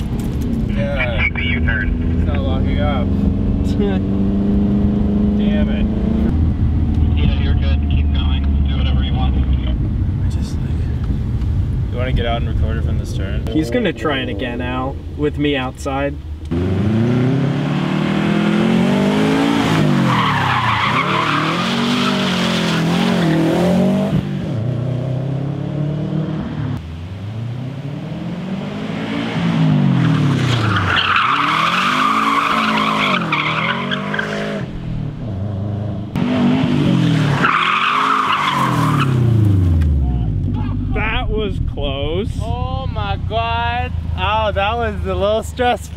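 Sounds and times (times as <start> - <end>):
car engine revving hard: 1.3 - 8.8, 16.5 - 26.8, 27.6 - 40.1
tyres squealing: 20.0 - 23.4, 30.1 - 34.6.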